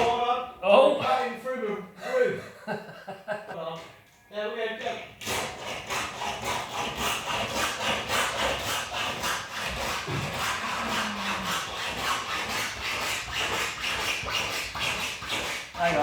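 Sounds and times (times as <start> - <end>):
wire sawing through adhesive: 5.2 - 16.0.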